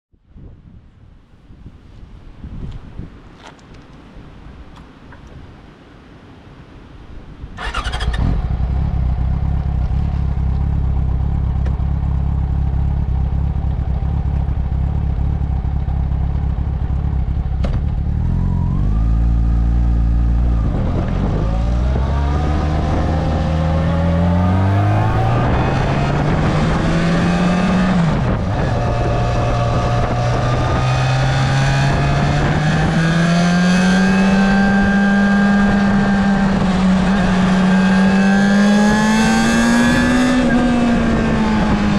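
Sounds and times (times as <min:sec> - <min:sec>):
motorcycle engine: 0:07.6 - 0:41.9.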